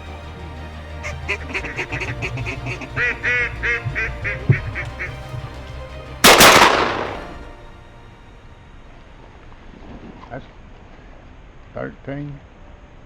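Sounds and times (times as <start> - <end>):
ducks quacking: 1.0 - 5.6
shotgun shot: 6.2 - 7.4.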